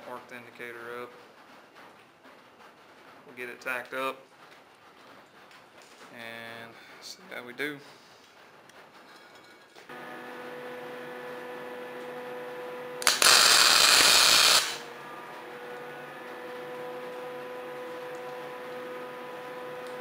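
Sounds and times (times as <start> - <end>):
welding arc hissing: 13.0 - 14.9
welding torch click: 13.0 - 14.9.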